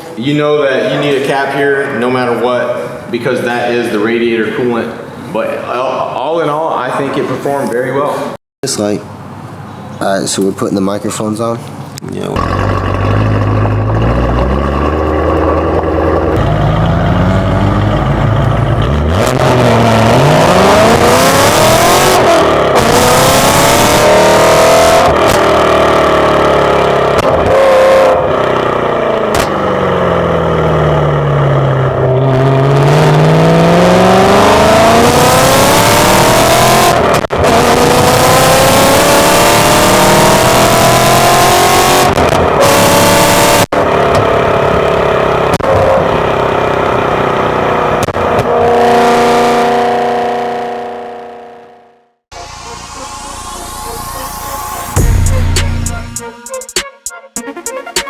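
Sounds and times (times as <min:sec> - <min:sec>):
car engine revving: 0:12.2 - 0:56.4.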